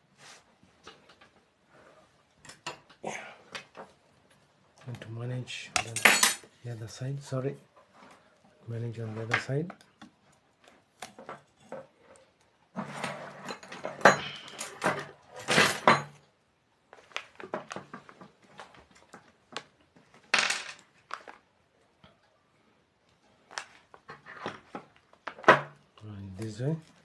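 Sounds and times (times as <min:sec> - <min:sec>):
metal plates and bolts clinking: 0:05.8 - 0:06.4.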